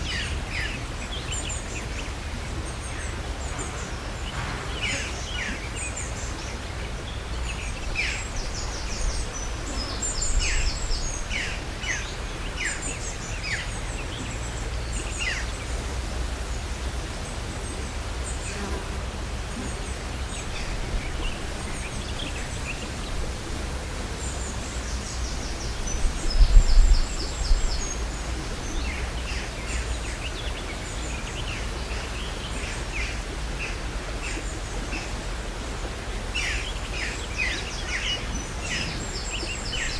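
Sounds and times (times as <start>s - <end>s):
small birds chirping: 0.0s - 15.8s, 19.5s - 39.9s
low wind rumble: 0.0s - 18.3s, 19.0s - 30.9s, 38.4s - 39.9s.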